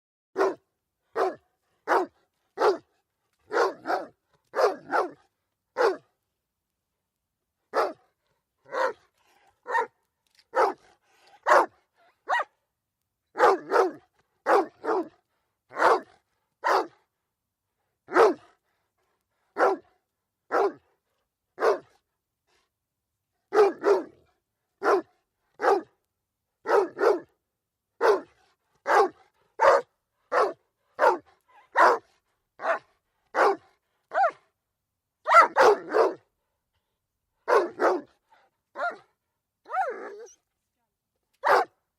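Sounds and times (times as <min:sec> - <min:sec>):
dog barking: 0:00.4 - 0:02.9, 0:03.5 - 0:06.1, 0:07.7 - 0:08.1, 0:08.7 - 0:09.0, 0:09.6 - 0:12.5, 0:13.4 - 0:17.0, 0:18.1 - 0:18.5, 0:19.6 - 0:20.9, 0:21.6 - 0:22.0, 0:23.5 - 0:24.2, 0:24.8 - 0:26.0, 0:26.6 - 0:27.3, 0:28.0 - 0:34.4, 0:35.2 - 0:36.3, 0:37.4 - 0:39.1, 0:39.7 - 0:40.4, 0:41.4 - 0:41.8.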